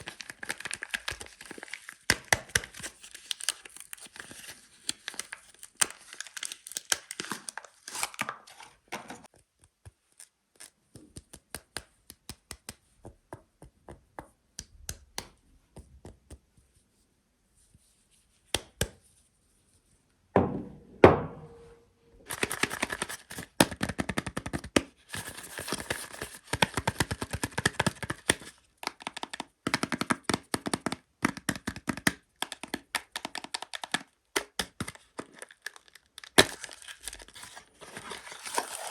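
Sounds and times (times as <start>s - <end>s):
wrappers tearing and crinkling: 0.0s - 8.6s, 35.2s - 38.9s
loud thunk: 20.4s - 21.7s.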